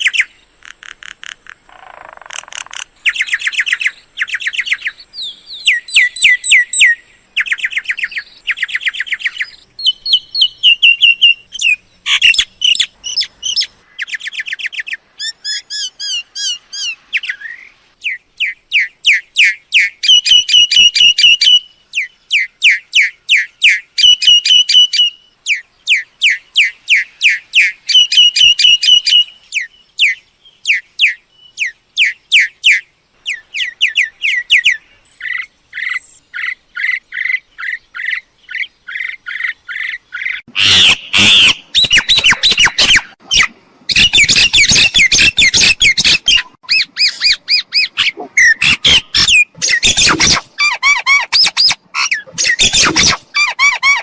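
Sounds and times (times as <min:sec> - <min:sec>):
myna squawking: 0:40.5 - 0:54.0.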